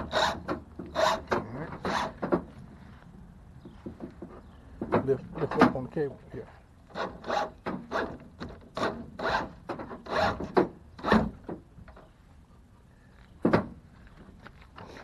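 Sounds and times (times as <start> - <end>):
cable scraping against wood: 0.0 - 2.3, 6.9 - 11.1.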